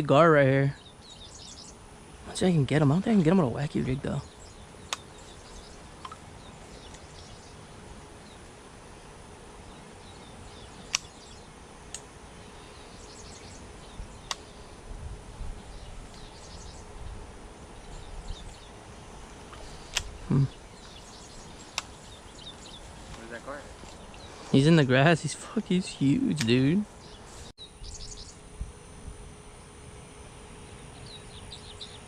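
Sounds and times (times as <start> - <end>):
insect chirps: 0.0 - 32.0
bird chirps: 0.7 - 2.4, 3.0 - 8.5, 9.6 - 11.6, 12.5 - 14.8, 15.6 - 17.0, 19.5 - 28.4, 30.6 - 32.0
sharp clicks: 4.9 - 5.1, 10.8 - 11.2, 11.9 - 12.1, 14.2 - 14.5, 19.5 - 20.2, 21.7 - 22.0.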